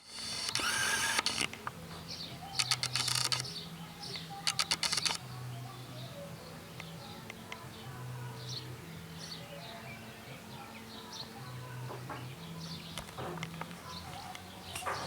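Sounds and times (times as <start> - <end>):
rat teeth grinding clicks: 2.6 - 3.5, 4.5 - 5.2.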